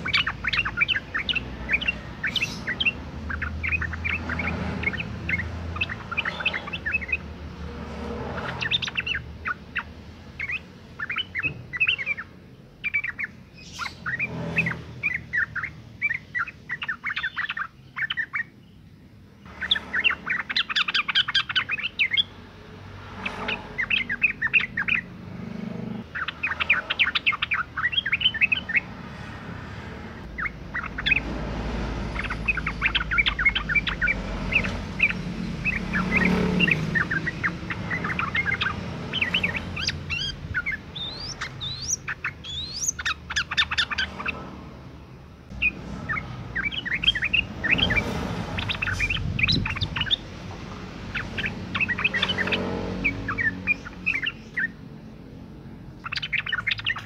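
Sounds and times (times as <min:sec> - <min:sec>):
bird bubbling chirps: 0:00.0 - 0:07.2, 0:32.1 - 0:44.4, 0:45.6 - 0:50.3.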